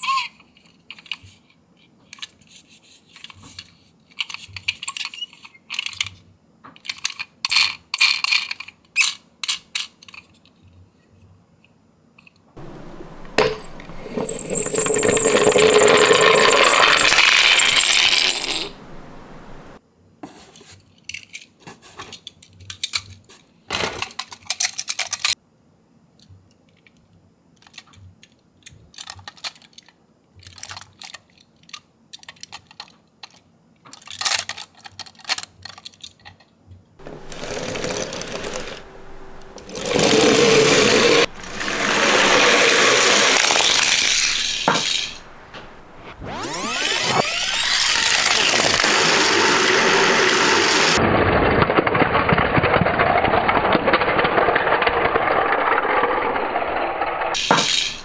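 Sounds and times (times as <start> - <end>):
toy cars rattling down a slope: 12.6 - 19.8, 37.0 - 51.0, 51.8 - 58.0.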